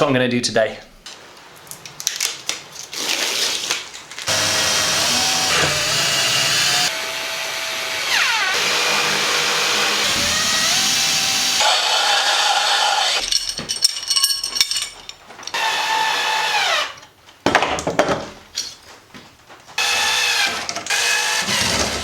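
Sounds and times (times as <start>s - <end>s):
power tool motor whining: 4.3s - 13.2s, 19.8s - 22.0s.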